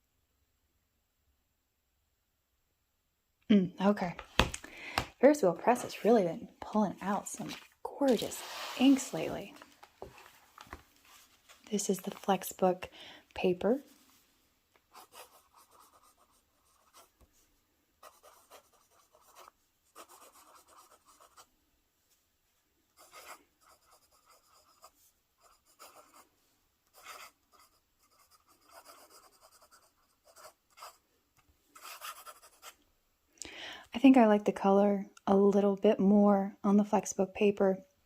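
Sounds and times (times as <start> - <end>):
pen scratching on paper: 14.9 - 17.1, 18.0 - 21.5, 23.0 - 26.2, 26.9 - 31.0, 31.8 - 32.8.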